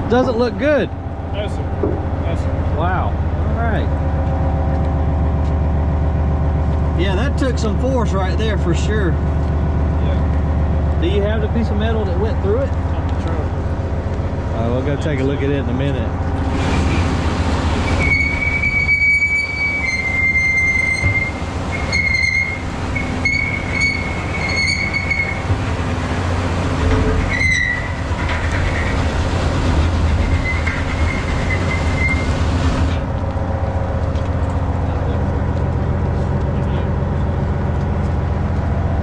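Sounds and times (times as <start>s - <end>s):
heavy equipment engine droning: 0.0s - 39.0s
high metallic squeal: 17.7s - 25.5s, 26.8s - 28.9s, 30.2s - 32.3s.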